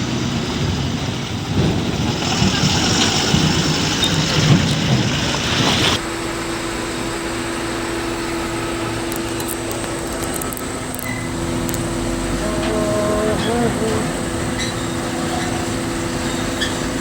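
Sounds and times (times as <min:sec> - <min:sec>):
vehicle engine running: 0:00.0 - 0:17.0
steady hum: 0:07.0 - 0:17.0.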